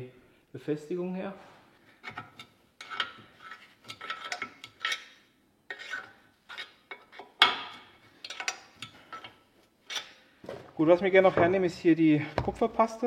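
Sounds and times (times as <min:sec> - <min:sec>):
screwdriver scraping metal: 0:02.0 - 0:10.2.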